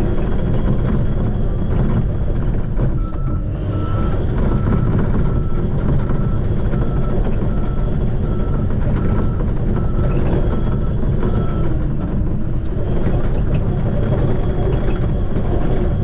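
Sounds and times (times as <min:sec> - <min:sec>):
bulldozer diesel engine running: 0:00.0 - 0:16.0
reversing alarm beeping: 0:03.0 - 0:11.8.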